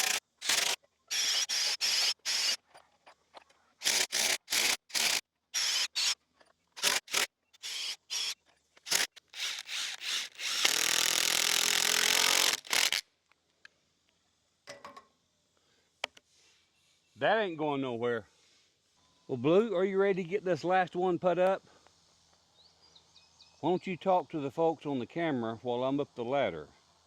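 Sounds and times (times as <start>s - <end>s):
cordless drill drilling into wood: 0.0s - 2.6s, 3.8s - 6.2s, 6.8s - 13.0s.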